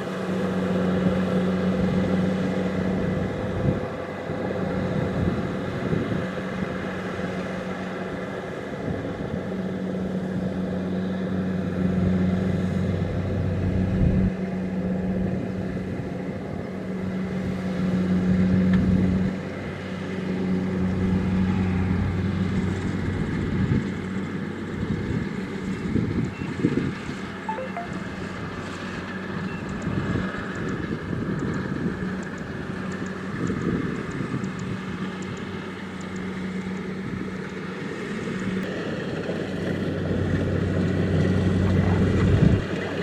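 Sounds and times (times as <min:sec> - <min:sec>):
combine harvester engine hum: 0:00.0 - 0:43.0.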